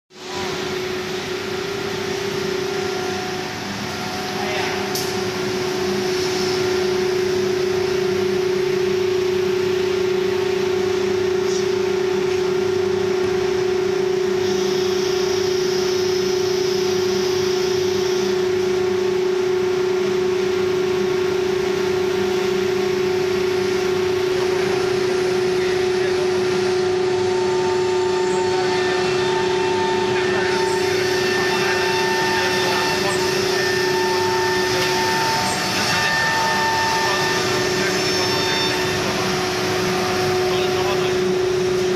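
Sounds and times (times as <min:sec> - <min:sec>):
router spindle whine: 0:00.2 - 0:41.9.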